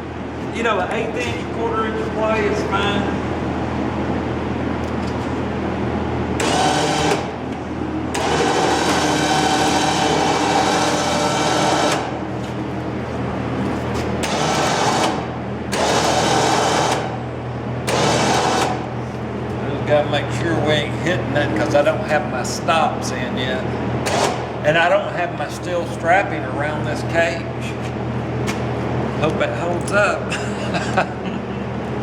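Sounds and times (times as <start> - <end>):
electric hoist motor running: 0.0 - 30.3
steady low hum: 0.0 - 32.0.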